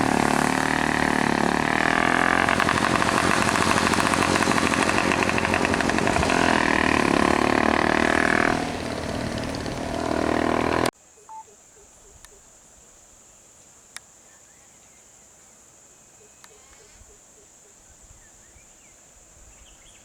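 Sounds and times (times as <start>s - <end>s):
vehicle engine running: 0.0s - 10.9s.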